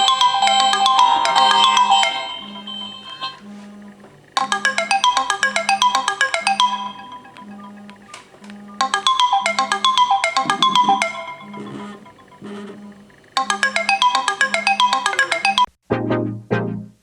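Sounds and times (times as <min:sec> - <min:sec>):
phone vibration buzzing: 0:00.0 - 0:05.0, 0:09.6 - 0:13.6
marimba-like phone alarm melody: 0:00.0 - 0:15.7.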